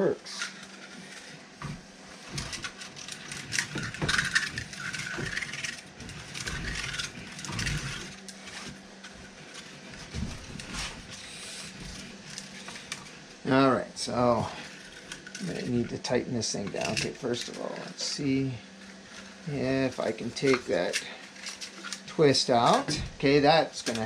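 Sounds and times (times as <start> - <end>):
filament spool clicking and rattling: 2.3 - 9.8.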